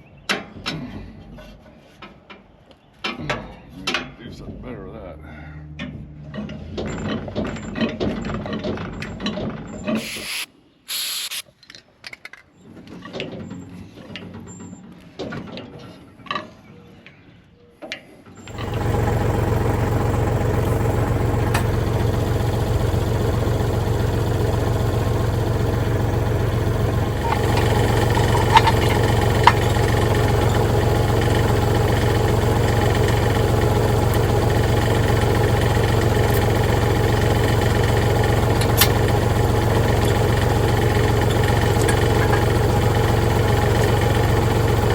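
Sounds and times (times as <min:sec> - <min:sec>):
sharp clicks: 0:10.0 - 0:11.5
tractor engine idling: 0:18.4 - 0:44.9
hand work on metal parts: 0:26.9 - 0:31.9.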